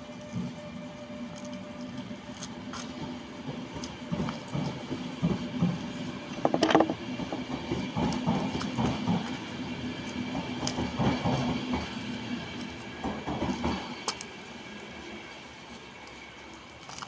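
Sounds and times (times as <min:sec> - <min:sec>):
train running hum: 0:00.0 - 0:17.0
train wheels knocking and rumbling: 0:02.5 - 0:15.6.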